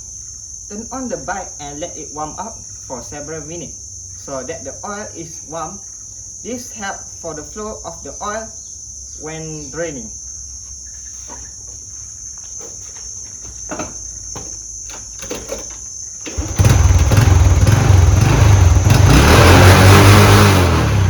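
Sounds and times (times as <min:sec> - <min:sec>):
motorcycle engine idling: 0:16.3 - 0:21.0.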